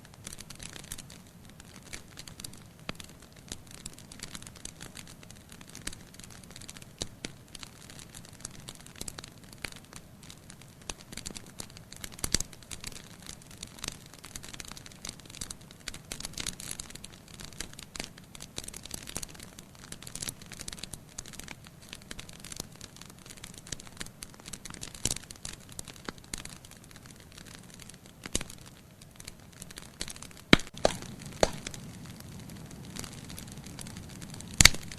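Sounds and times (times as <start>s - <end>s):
wood fire crackling and popping: 0.0s - 34.9s.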